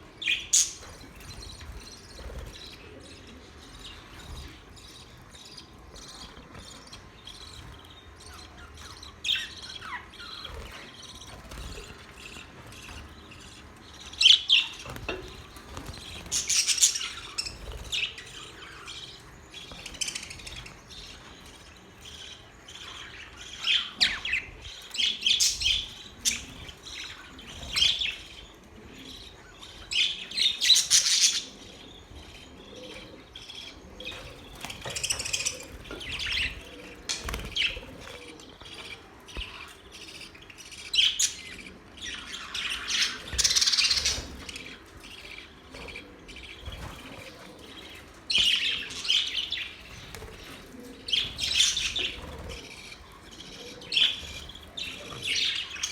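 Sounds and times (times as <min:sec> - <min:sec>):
budgerigars chirping: 0:00.2 - 0:21.4, 0:22.0 - 0:55.9.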